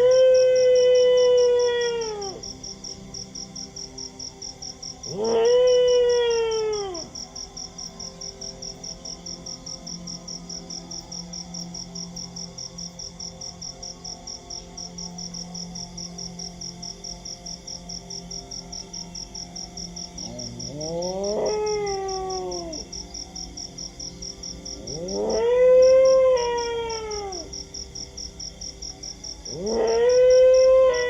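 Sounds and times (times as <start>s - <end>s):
dog howling: 0.0s - 2.5s, 5.1s - 7.2s, 20.3s - 23.0s, 24.8s - 27.5s, 29.5s - 31.0s
crickets chirping: 0.0s - 31.0s.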